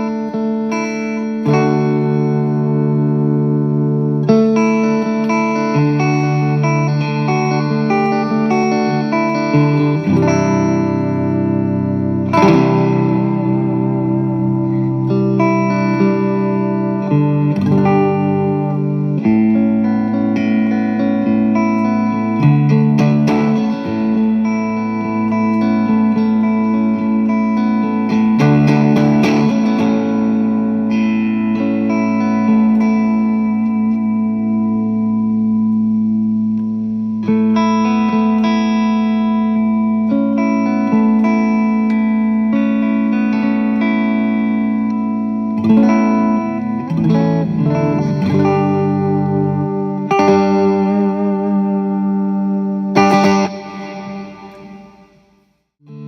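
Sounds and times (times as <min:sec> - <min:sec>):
overdriven electric guitar: 0:00.0 - 0:56.0.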